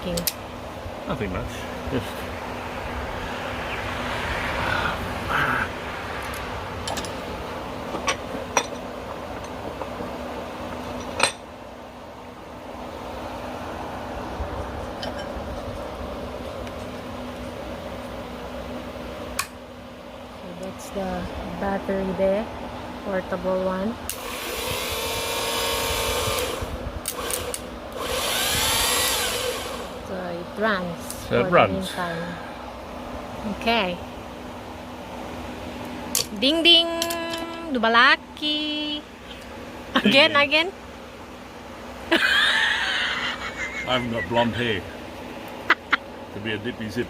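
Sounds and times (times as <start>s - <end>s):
faint steady hum: 0.0s - 47.0s
electric motor whining: 24.1s - 30.2s
sharp electrical clicks: 26.3s - 28.1s.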